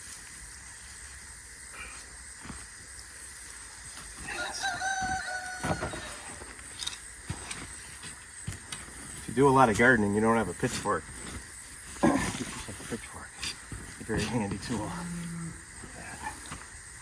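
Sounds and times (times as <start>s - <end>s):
rooster crowing: 4.2s - 6.6s.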